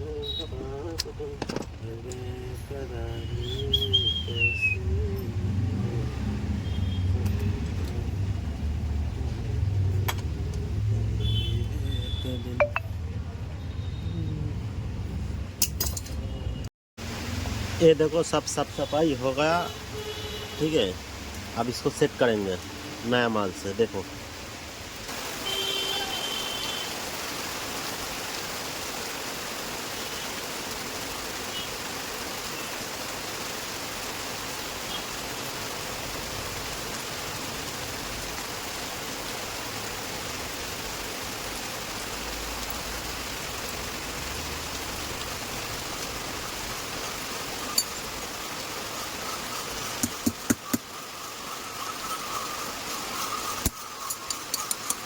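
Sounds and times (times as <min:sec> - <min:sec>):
heavy rain falling: 0:00.0 - 0:12.5, 0:17.0 - 0:55.0
sharp clicks: 0:53.6 - 0:55.0.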